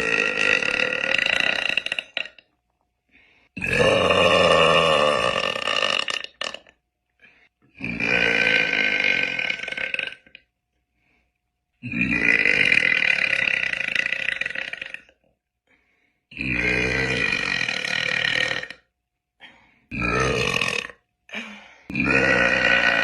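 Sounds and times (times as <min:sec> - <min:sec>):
woman burping: 0:00.0 - 0:02.5, 0:19.9 - 0:23.0.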